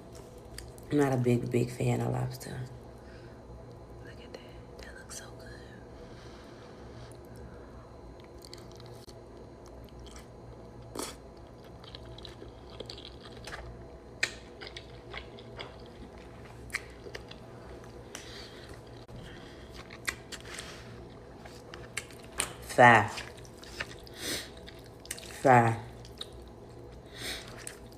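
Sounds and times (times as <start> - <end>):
low steady hum: 0.0 - 27.9
person chewing food: 8.2 - 27.9.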